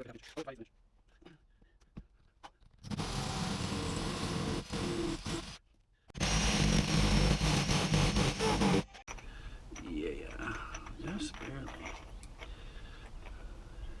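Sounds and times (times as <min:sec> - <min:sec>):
power drill boring through brick: 0:02.8 - 0:05.6, 0:06.2 - 0:08.9.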